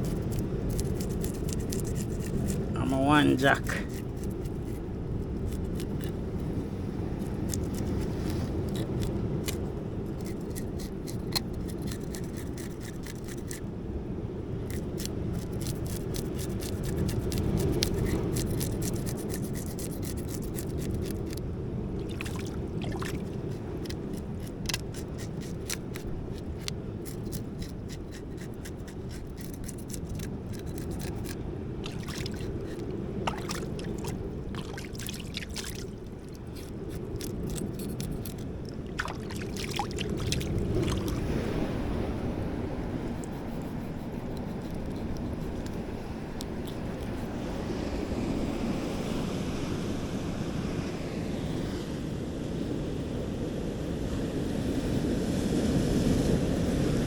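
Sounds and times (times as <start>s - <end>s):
light clicks and scrapes: 0.0s - 2.7s, 7.2s - 13.6s, 14.7s - 21.4s, 23.1s - 41.3s, 43.0s - 47.4s
rough sea against rocks: 0.0s - 57.0s.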